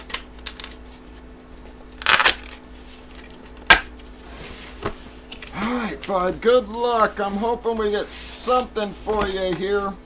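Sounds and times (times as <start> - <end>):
packaging rustling and tearing: 1.5 - 4.2.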